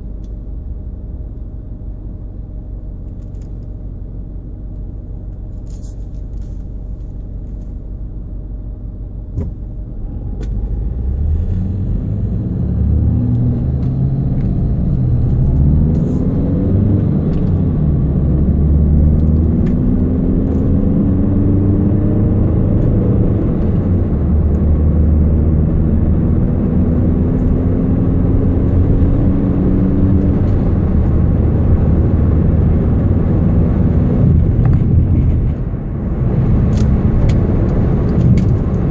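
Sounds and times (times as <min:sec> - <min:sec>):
road rumble inside car: 0:00.0 - 0:38.9
car engine accelerating: 0:09.3 - 0:38.9.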